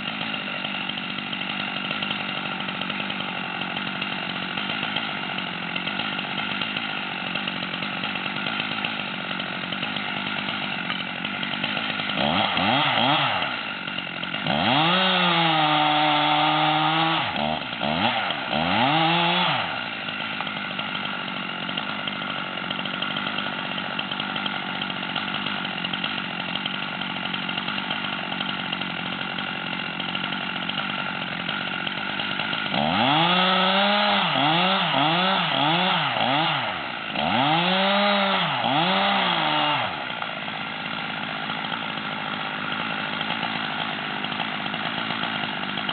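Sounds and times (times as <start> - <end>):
chainsaw idling and revving: 0.0 - 45.9.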